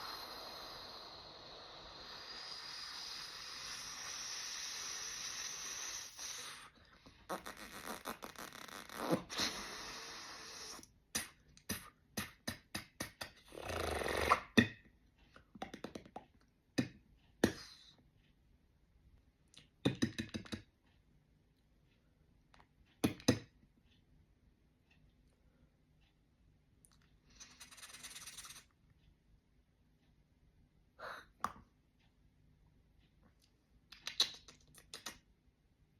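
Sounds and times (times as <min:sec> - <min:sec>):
beatboxer hiss: 0:00.0 - 0:06.7, 0:07.3 - 0:14.5, 0:17.4 - 0:17.9, 0:27.4 - 0:28.7
noisy mouth burst: 0:00.0 - 0:06.7, 0:07.3 - 0:14.6, 0:27.4 - 0:28.7
beatboxer mouth clicks and pops: 0:07.3 - 0:14.9, 0:15.5 - 0:17.9, 0:19.5 - 0:20.7, 0:22.6 - 0:23.5, 0:26.9 - 0:28.7, 0:33.9 - 0:35.3.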